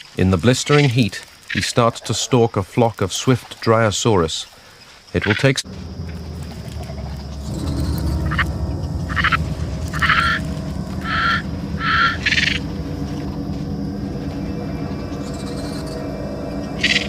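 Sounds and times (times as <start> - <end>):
low rumble: 5.6 - 17.0.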